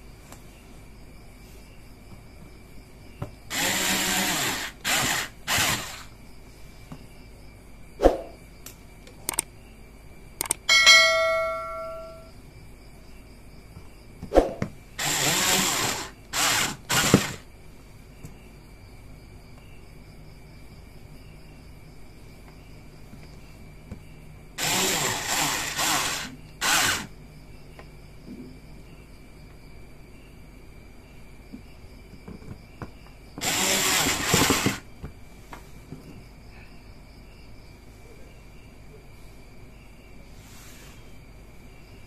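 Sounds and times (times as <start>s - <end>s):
handheld power tool whirring: 3.5s - 6.1s, 15.0s - 17.4s, 24.6s - 27.1s, 33.4s - 34.8s
small clicks: 8.6s - 9.5s, 10.4s - 10.7s
metallic ring: 10.7s - 12.3s.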